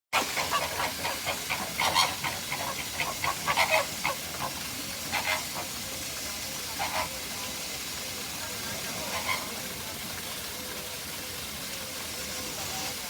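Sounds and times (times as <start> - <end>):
flamingos calling: 0.4 - 5.9, 6.6 - 7.3, 8.9 - 9.7.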